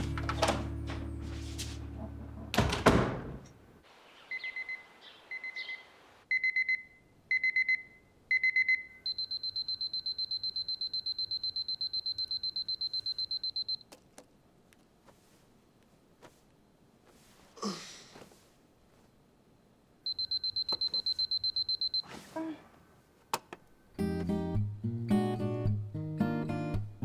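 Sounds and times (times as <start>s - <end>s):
background music: 0.0s - 3.1s, 24.0s - 27.0s
alarm clock beeping: 6.3s - 13.8s, 20.1s - 22.0s.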